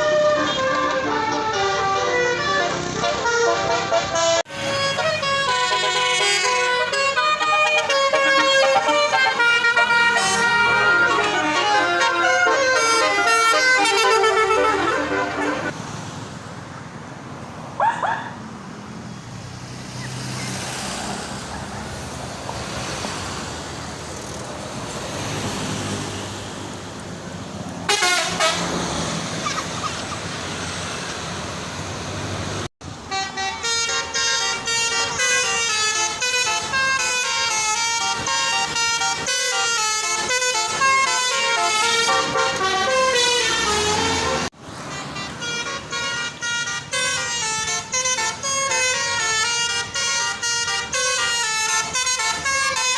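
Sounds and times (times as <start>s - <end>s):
multi-tone bus horns playing tunes: 0.0s - 15.8s, 27.7s - 30.4s, 32.8s - 52.9s
traffic and engine noise: 0.0s - 52.9s
short horn toots: 27.9s - 28.8s.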